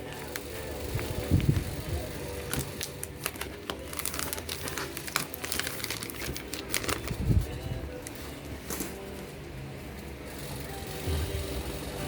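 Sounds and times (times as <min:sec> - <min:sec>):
packaging crinkling: 0:02.4 - 0:08.2.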